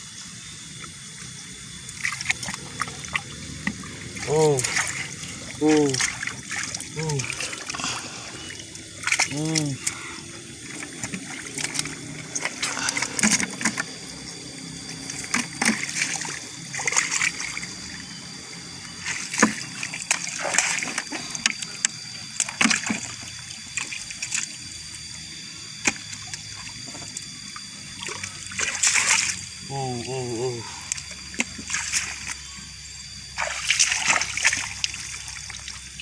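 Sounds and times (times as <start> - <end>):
water trickling: 0.4 - 36.0
hands splashing shallow water: 1.9 - 10.0, 33.4 - 35.8.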